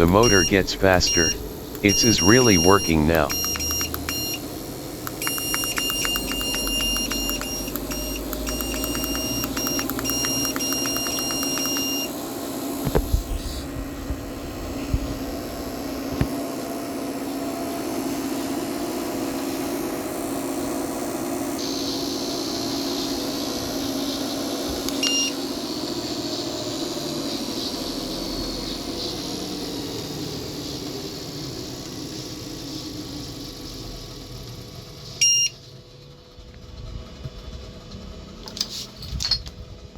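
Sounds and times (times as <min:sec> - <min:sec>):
console short beeps: 0:00.0 - 0:04.4, 0:05.1 - 0:12.0
treadmill motor and belt running: 0:05.1 - 0:11.9.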